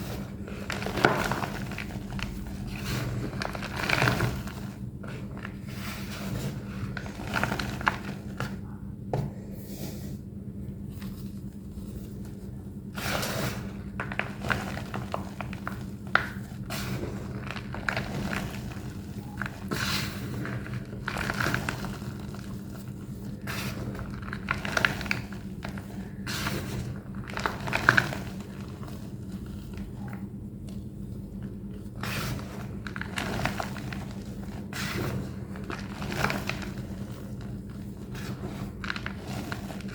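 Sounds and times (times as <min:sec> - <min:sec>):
chalk blocks being crushed: 0:00.0 - 0:08.6.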